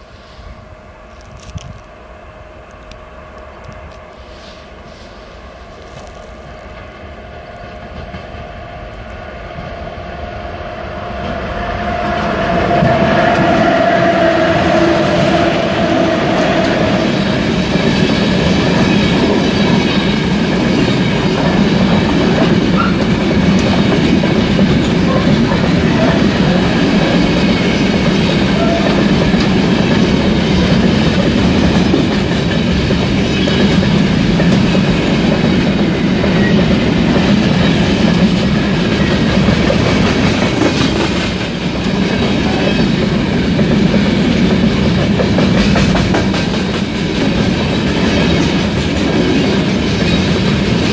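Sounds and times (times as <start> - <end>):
train wheels clattering over rail joints: 16.3 - 50.9.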